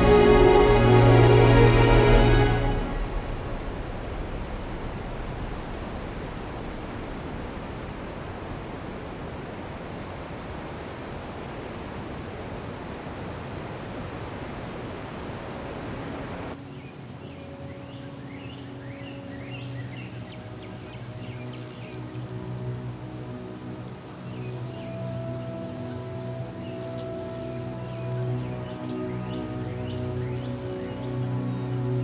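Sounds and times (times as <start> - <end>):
flowing water rushing: 0.0 - 3.6, 7.2 - 32.0
faint bird chirps: 16.6 - 32.0.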